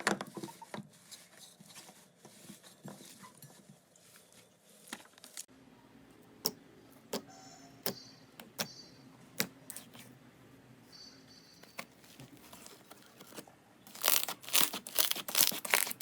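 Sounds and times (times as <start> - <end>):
slime crackling: 13.9 - 16.0.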